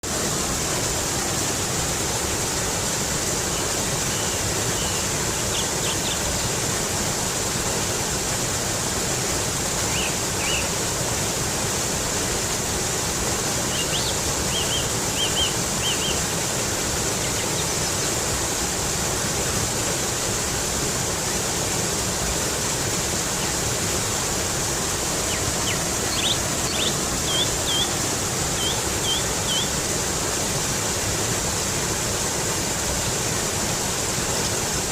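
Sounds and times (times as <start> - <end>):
water flowing over rocks: 0.0 - 34.9
bird chirping: 25.3 - 27.9, 28.6 - 29.7.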